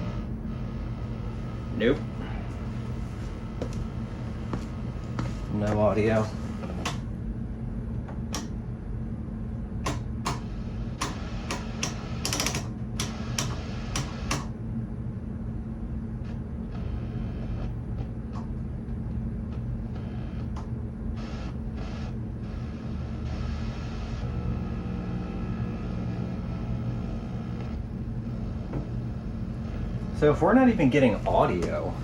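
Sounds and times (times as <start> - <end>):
low hum from television set: 0.0 - 32.0
rotary tuner clicks: 9.8 - 14.5.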